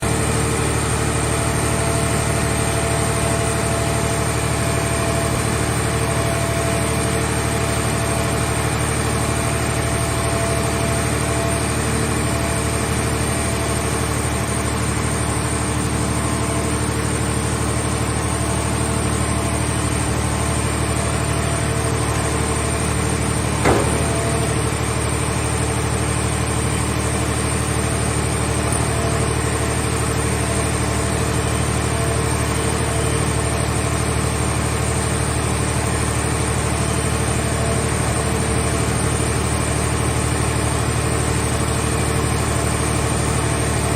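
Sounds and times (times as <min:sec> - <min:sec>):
baler power unit droning: 0:00.0 - 0:43.9.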